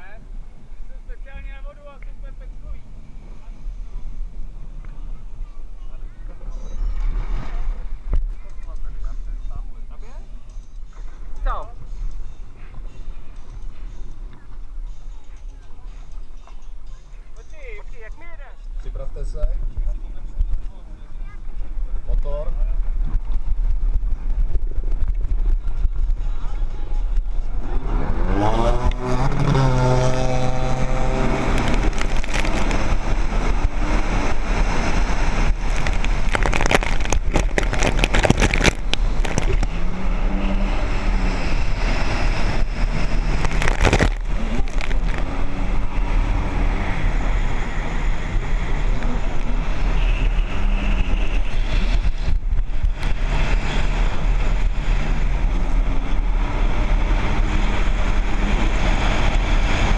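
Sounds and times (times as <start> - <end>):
jet ski engines whining: 27.6 - 51.8
water rushing: 30.2 - 48.1.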